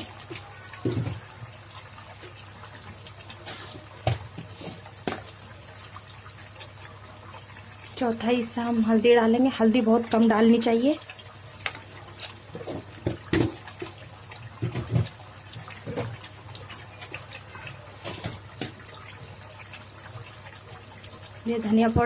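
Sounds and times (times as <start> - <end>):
masala sizzling in oil: 0.0 - 22.0.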